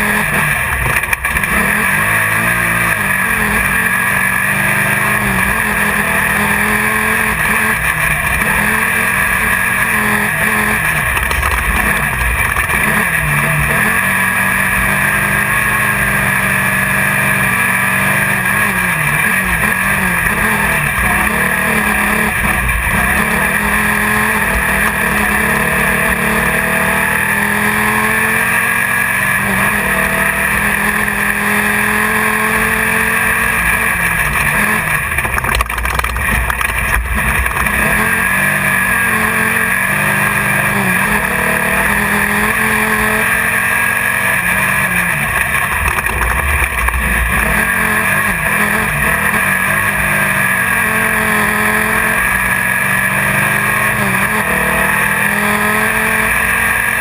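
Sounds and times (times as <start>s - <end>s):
steady rushing noise: 0.0s - 27.5s, 28.3s - 53.0s
race car engine revving: 0.0s - 57.0s.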